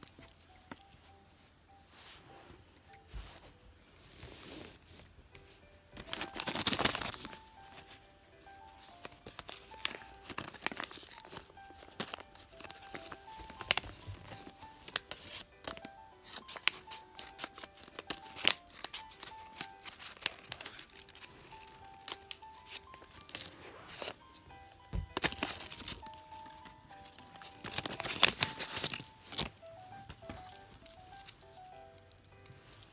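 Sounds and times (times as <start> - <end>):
simple background melody: 0.0 - 32.9
packaging crinkling and tearing: 6.0 - 24.4, 25.0 - 31.8.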